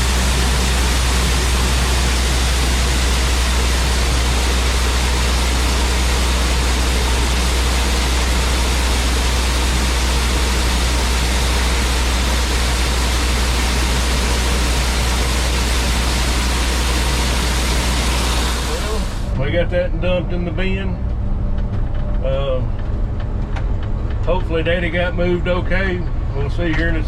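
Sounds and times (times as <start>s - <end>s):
grain machinery low hum: 0.0s - 27.0s.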